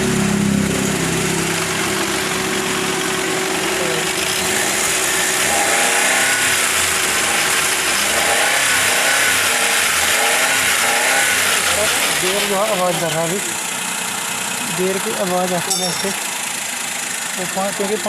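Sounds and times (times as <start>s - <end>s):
radiator fan running: 0.0s - 5.5s
car engine idling: 0.0s - 18.0s.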